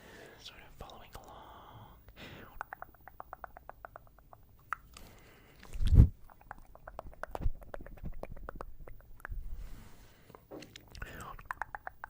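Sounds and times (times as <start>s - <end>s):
wet tongue clicks: 2.4s - 9.4s, 10.6s - 12.0s.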